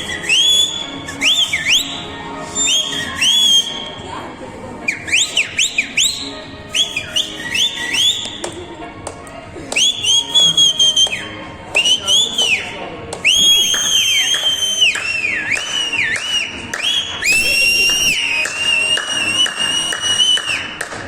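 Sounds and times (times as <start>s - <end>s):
people whistling: 0.0s - 4.0s, 4.8s - 8.6s, 9.7s - 21.0s.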